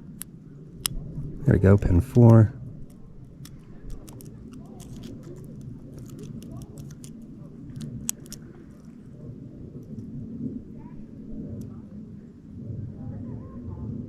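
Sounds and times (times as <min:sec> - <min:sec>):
low outdoor rumble: 0:00.0 - 0:14.0
lock pick clicking in padlock: 0:02.8 - 0:08.8.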